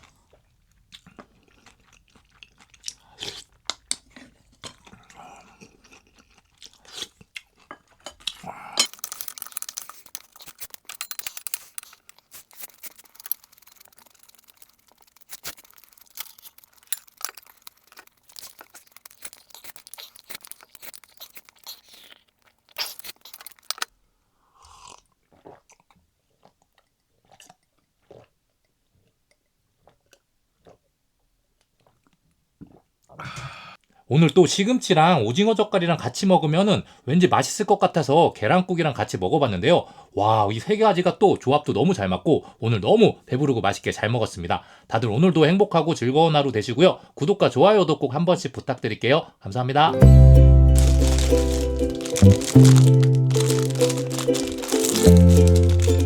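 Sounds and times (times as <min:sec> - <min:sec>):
chewing and crunching food: 0:00.0 - 0:23.9, 0:24.6 - 0:30.9, 0:31.6 - 0:33.2, 0:50.0 - 0:56.0.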